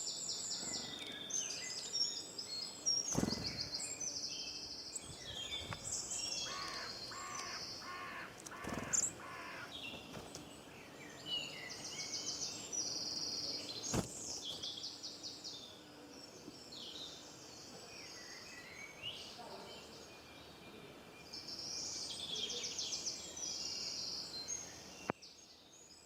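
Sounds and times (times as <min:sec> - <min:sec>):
songbirds trilling and chirping: 0:00.0 - 0:26.0
bird lower calls: 0:06.4 - 0:09.8.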